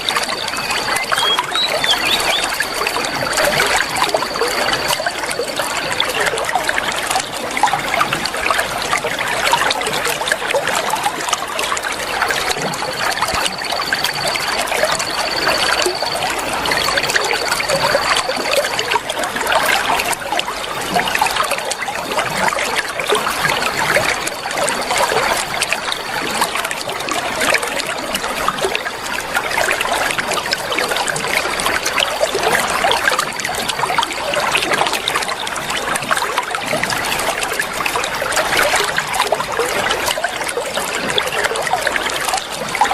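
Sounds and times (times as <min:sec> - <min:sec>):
faint high whistle: 0:00.0 - 0:05.2, 0:12.9 - 0:19.0
water trickling and babbling: 0:00.0 - 0:42.9.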